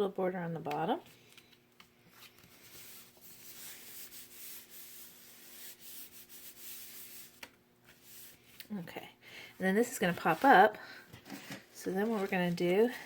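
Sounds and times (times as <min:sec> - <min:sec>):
hands rubbing paper: 0:02.1 - 0:08.6.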